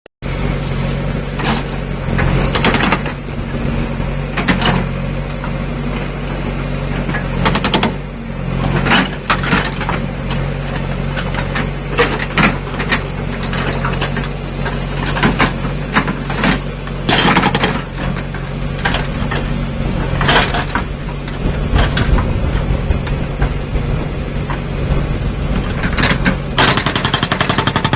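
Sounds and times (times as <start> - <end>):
diesel engine running: 0.2 - 27.9
hydraulic rock breaker hammering: 6.9 - 23.8, 25.6 - 27.9.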